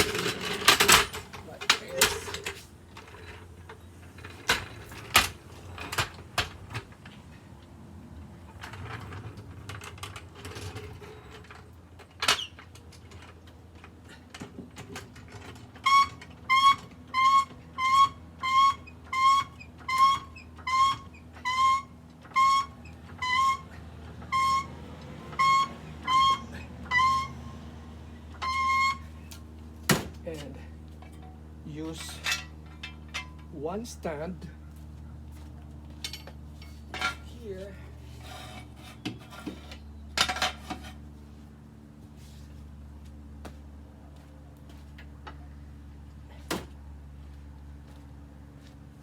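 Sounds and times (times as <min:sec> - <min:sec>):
floor jack squeaking: 0:00.0 - 0:06.4, 0:14.1 - 0:27.7, 0:28.3 - 0:29.3.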